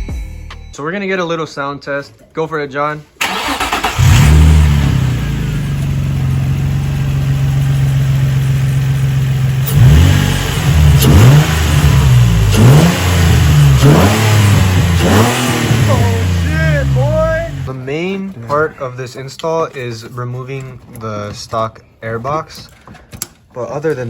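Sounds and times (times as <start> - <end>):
car engine idling and revving: 3.3 - 17.7.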